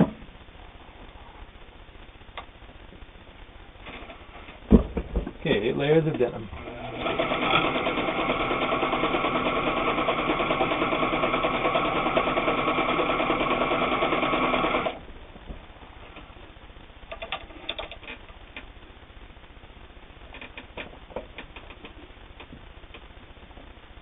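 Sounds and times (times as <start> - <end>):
sewing machine running: 6.6 - 15.0
faint clicks and rustles: 15.0 - 24.0.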